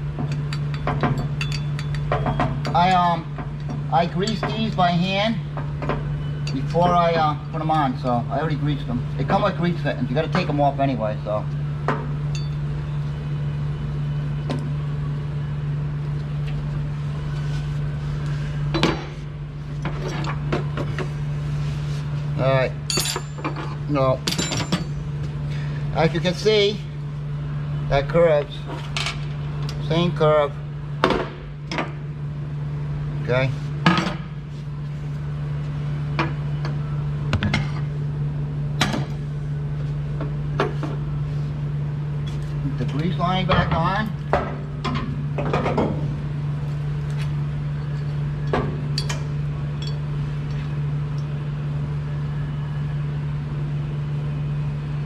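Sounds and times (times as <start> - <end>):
low machine hum: 0.0 - 55.0
metal tools clinking and clanking: 0.3 - 3.0, 22.9 - 25.0.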